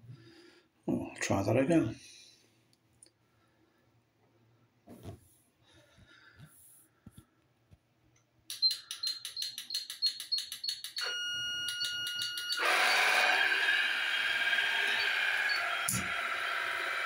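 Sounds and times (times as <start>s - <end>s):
motor whirring: 12.5s - 17.0s.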